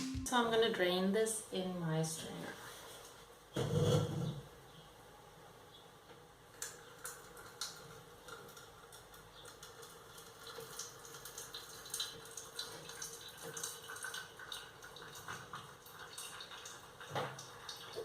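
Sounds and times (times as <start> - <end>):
drips and splashes: 7.0 - 18.0.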